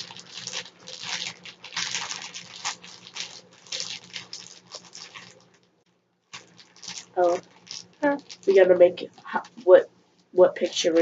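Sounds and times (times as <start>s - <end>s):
slime squishing: 0.0s - 5.6s, 6.3s - 9.7s
plastic bag crinkling: 0.0s - 11.0s.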